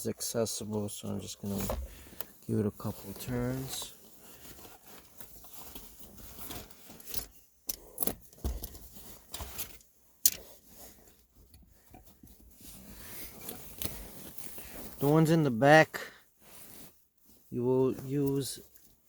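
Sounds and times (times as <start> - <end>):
bolt clicking and scraping: 9.4 - 10.5.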